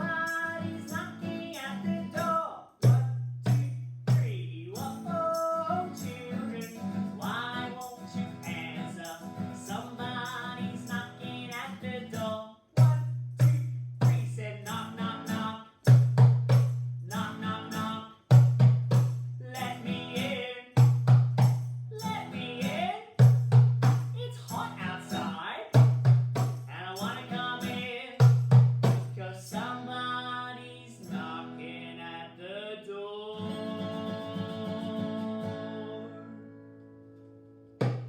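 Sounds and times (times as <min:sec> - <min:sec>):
person singing: 0:00.0 - 0:08.0, 0:31.4 - 0:36.4
deep drum beats: 0:18.4 - 0:19.1, 0:25.8 - 0:26.6.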